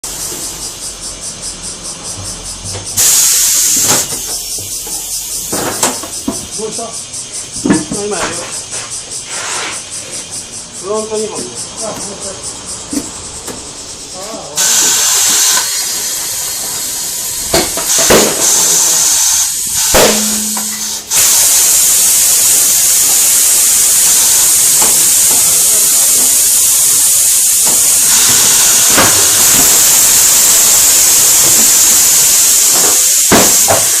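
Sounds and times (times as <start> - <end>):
compressed air hissing: 0.0 - 34.0
tools clanking: 19.9 - 21.1.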